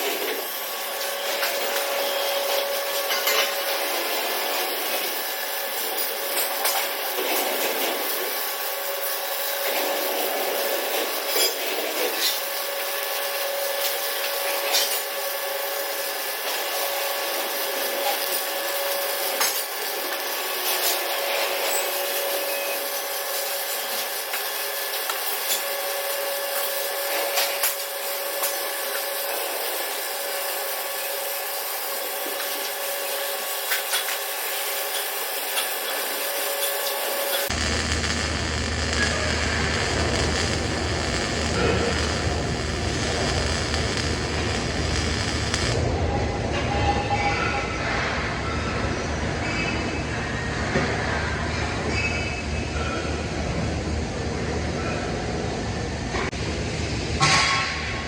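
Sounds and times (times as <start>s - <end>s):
welding arc crackling hiss: 0.0s - 45.9s
faint steady hum: 37.5s - 45.8s.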